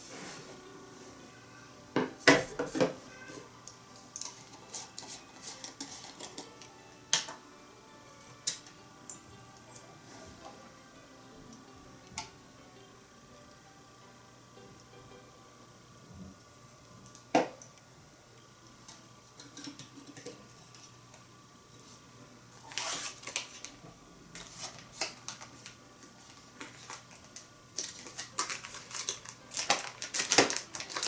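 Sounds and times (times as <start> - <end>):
utensils clattering on iron pot: 4.2 - 6.6, 19.4 - 20.4.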